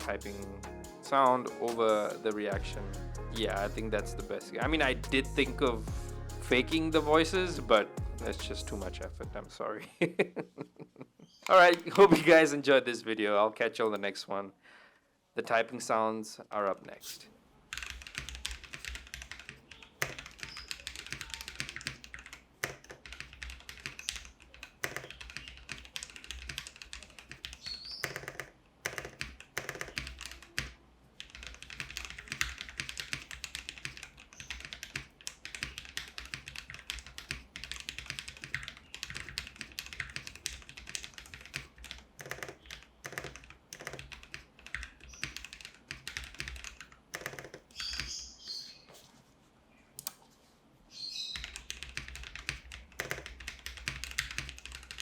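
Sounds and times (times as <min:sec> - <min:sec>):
mechanical keyboard typing: 0:17.7 - 0:48.2, 0:51.4 - 0:55.0.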